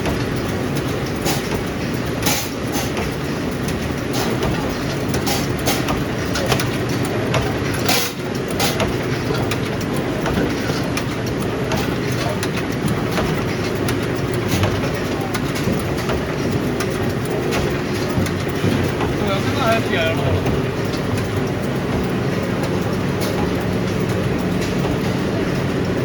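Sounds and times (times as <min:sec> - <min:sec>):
factory machinery din: 0:00.0 - 0:26.0
machine clacks and knocks: 0:00.0 - 0:26.0.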